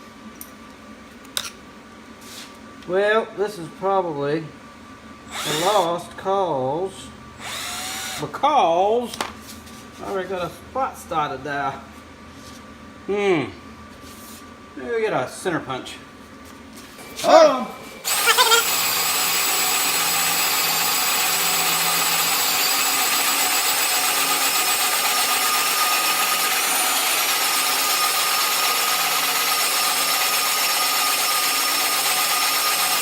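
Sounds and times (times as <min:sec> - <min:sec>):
power drill boring into steel: 0:05.3 - 0:05.9, 0:07.4 - 0:08.3, 0:18.0 - 0:33.0.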